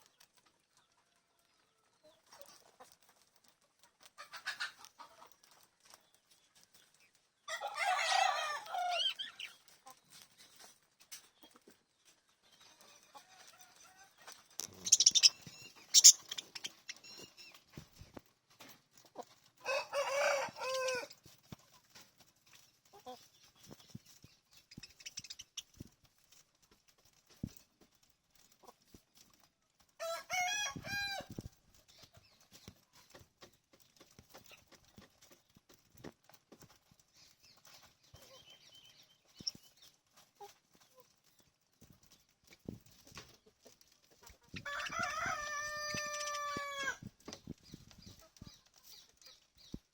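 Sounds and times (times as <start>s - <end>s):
faint chirps: 14.6s - 17.8s.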